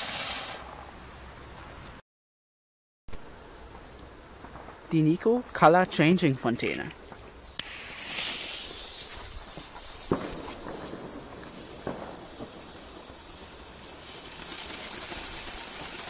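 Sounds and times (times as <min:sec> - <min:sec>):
firework fuse click: 0:00.0 - 0:00.8, 0:06.0 - 0:13.9
sharp crackles: 0:00.0 - 0:00.9, 0:03.7 - 0:16.0
fountain firework hissing: 0:00.0 - 0:01.3, 0:07.5 - 0:16.0.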